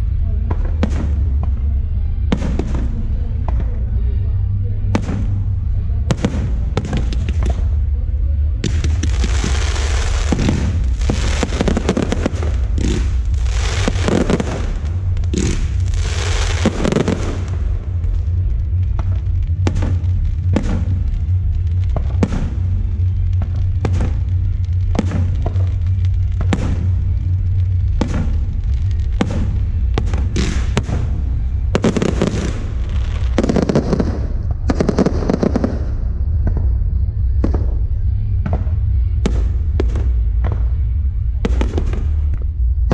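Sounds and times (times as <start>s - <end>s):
steady low rumble: 0.0s - 42.9s
fireworks shells bursting: 8.6s - 18.2s.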